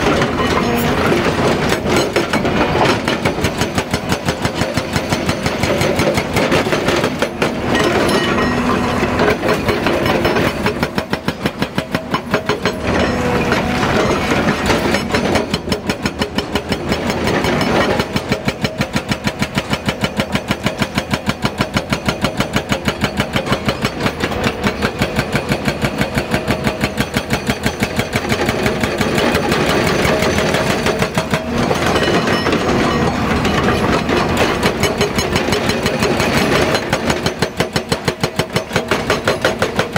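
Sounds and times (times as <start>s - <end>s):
hydraulic rock breaker hammering: 0.0s - 39.9s
diesel engine running: 7.1s - 17.4s.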